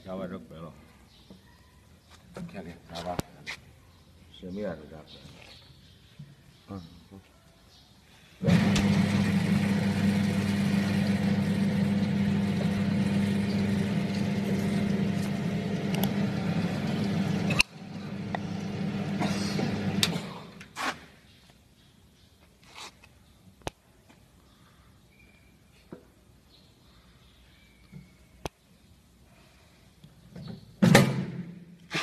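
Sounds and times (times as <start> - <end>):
machine motor humming: 8.4 - 20.7.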